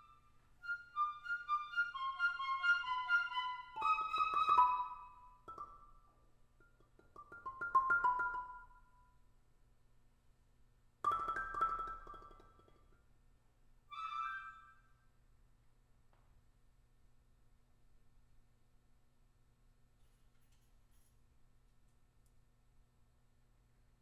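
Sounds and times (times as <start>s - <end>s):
tuned mallet percussion: 6.6s - 9.2s.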